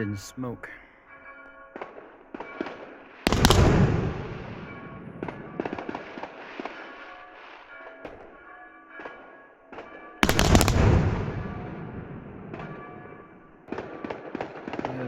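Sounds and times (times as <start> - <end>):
loud echoing firework bang: 1.8 - 6.8, 10.2 - 13.1.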